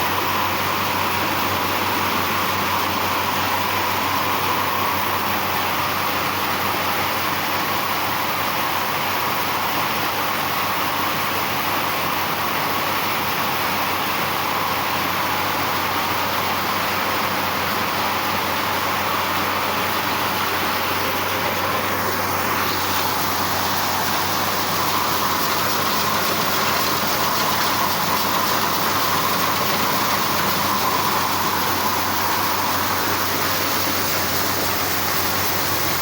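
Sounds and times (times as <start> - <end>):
machine whirring: 20.5 - 36.0.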